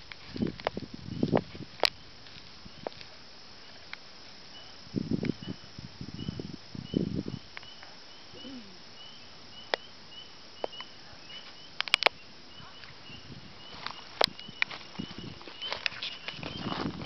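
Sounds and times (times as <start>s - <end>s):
night insects chirping: 0.0s - 17.0s
sharp clicks: 11.8s - 12.2s.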